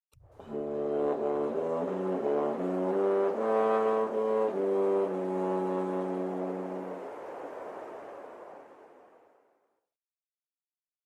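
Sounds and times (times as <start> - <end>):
brass-toned intro chords: 0.4 - 7.1.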